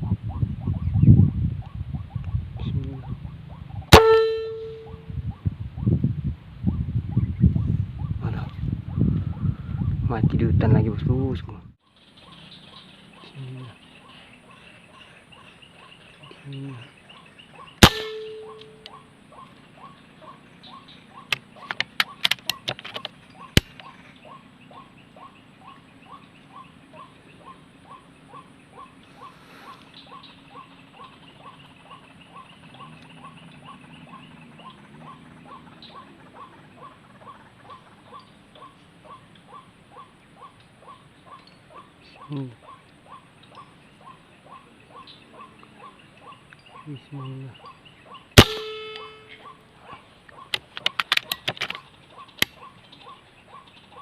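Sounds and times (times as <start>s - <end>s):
air rifle shot ringing: 3.9s - 5.0s, 17.8s - 18.8s, 48.4s - 49.4s
waterhen calling: 12.2s - 22.6s, 23.3s - 54.0s.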